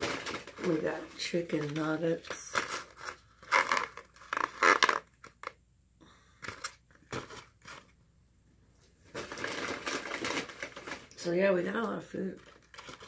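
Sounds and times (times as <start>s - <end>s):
paper bags rustling: 0.0s - 5.0s, 9.0s - 13.0s.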